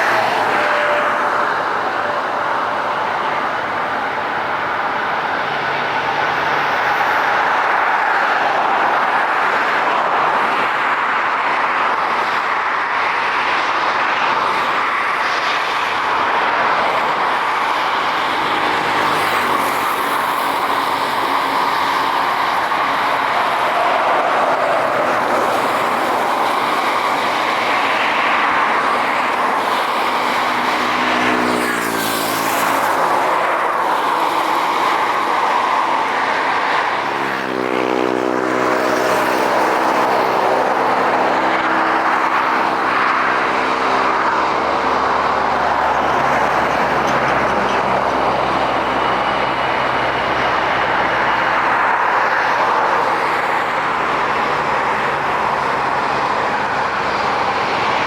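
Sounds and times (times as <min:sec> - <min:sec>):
loud engine roar: 0:00.0 - 0:15.1, 0:15.7 - 0:58.0
engine passing by: 0:28.6 - 0:58.0.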